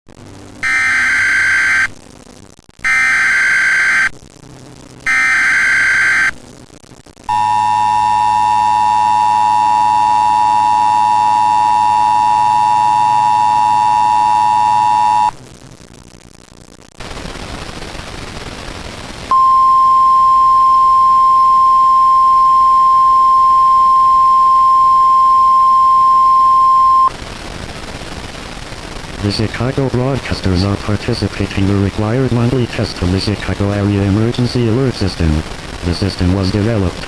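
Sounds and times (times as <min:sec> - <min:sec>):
two-tone attention signal: 0:00.6 - 0:01.9, 0:02.9 - 0:04.1, 0:05.1 - 0:06.3, 0:07.3 - 0:15.3, 0:19.3 - 0:27.1
buzzing data bursts: 0:00.6 - 0:02.0, 0:02.8 - 0:04.2, 0:05.0 - 0:06.4, 0:07.3 - 0:15.4, 0:19.2 - 0:37.0.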